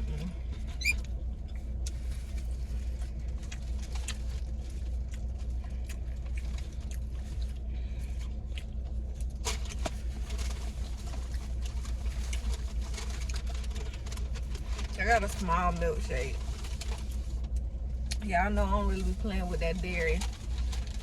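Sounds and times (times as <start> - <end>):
car engine running hum: 0.0 - 21.0
chewing clicks and smacks: 3.4 - 9.4.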